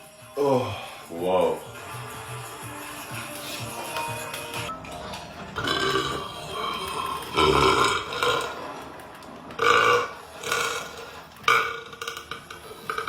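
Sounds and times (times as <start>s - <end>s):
man burping loudly: 5.6s - 8.7s, 9.6s - 13.0s.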